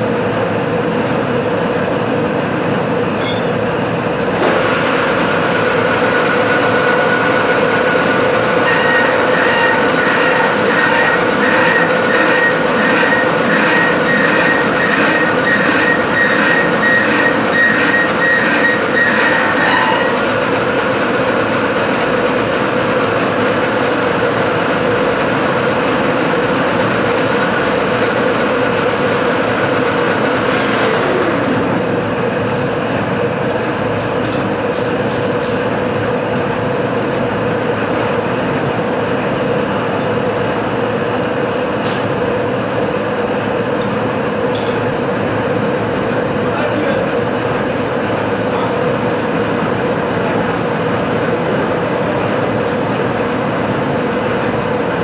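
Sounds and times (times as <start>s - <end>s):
machine tool humming: 3.0s - 22.6s
pulsing high tone: 8.5s - 21.3s.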